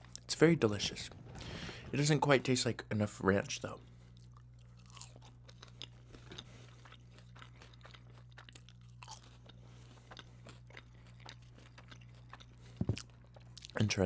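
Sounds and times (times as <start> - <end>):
low steady hum: 0.0 - 14.0
mouth chewing food: 4.1 - 14.0.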